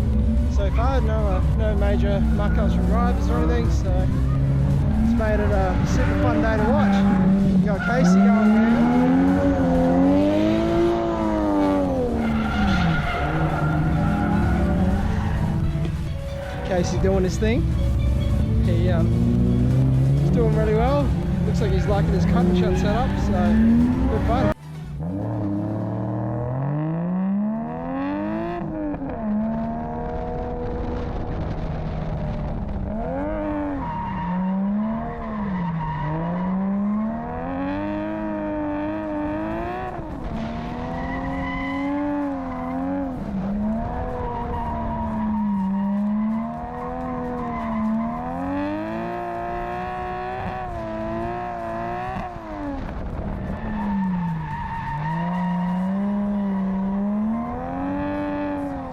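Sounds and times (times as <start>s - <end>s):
car engine revving: 0.0s - 58.9s.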